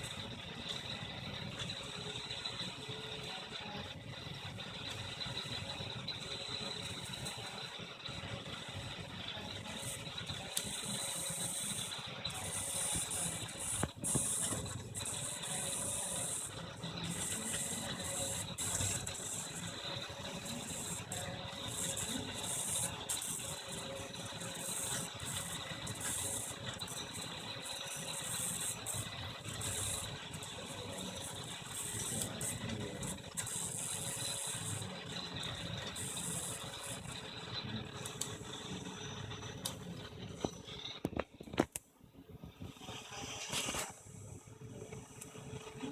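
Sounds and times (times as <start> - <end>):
stepper motors whirring: 9.5 - 37.2.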